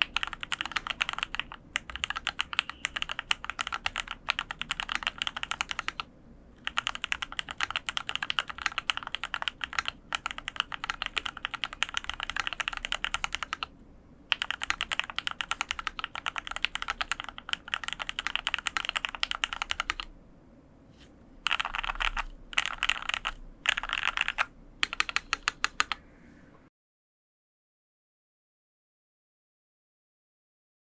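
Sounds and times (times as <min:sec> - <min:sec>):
typing on mechanical keyboard: 0:00.0 - 0:13.7, 0:14.3 - 0:20.1, 0:21.4 - 0:26.0.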